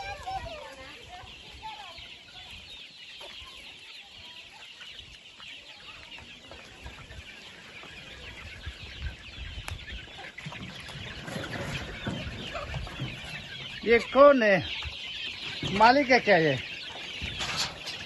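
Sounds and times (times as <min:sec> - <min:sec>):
chickens cheeping and clucking: 0:00.0 - 0:18.0.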